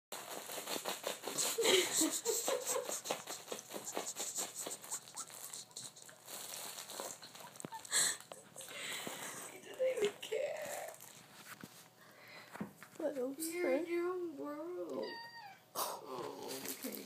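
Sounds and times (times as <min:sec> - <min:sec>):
cat scratching and rustling: 0:00.2 - 0:12.0.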